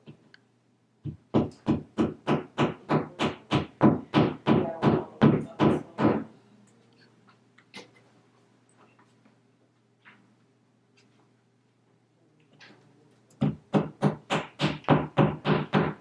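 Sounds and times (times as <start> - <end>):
hammer tapping wall anchors: 1.0 - 6.3, 13.4 - 16.0.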